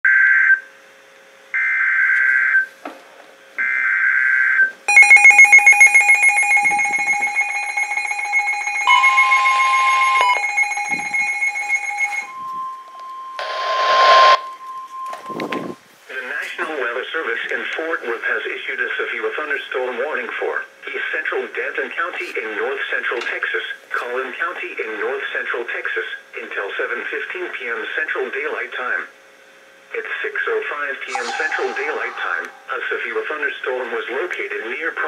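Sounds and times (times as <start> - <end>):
pulsing electronic alarm: 3.6 - 15.8, 31.1 - 32.9
warbling data bursts: 4.9 - 12.3, 31.1 - 33.0
steady warning tone: 4.9 - 15.8, 31.1 - 33.2
burst of noise: 31.1 - 33.1.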